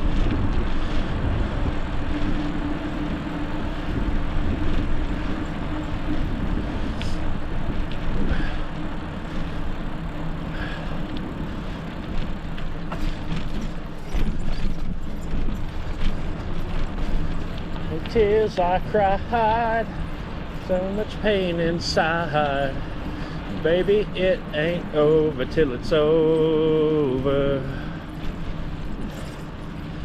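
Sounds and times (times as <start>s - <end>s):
bicycle road noise: 0.0s - 30.0s
low steady hum: 0.0s - 30.0s
wind noise: 0.0s - 30.0s.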